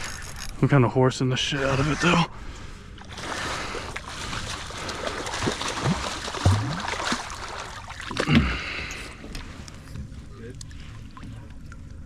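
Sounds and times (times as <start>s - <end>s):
water slapping against boat hull: 3.1s - 8.5s.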